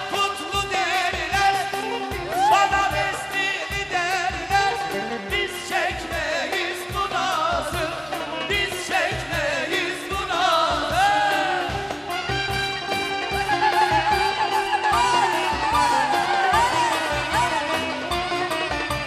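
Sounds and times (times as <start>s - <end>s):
band playing steady beat: 0.0s - 19.0s
person singing ornamented vocals: 0.0s - 19.0s.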